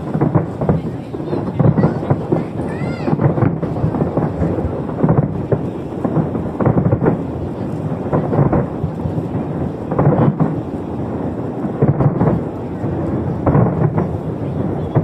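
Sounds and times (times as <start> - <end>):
continuous rumble: 0.0 - 15.0
fireworks booming: 0.0 - 15.0.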